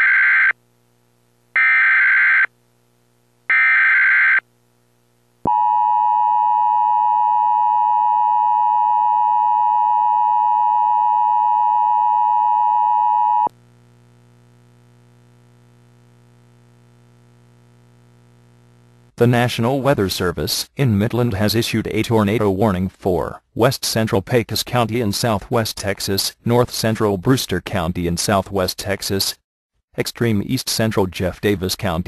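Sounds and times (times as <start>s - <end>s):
faint low hum: 0.6s - 1.6s, 4.4s - 21.9s.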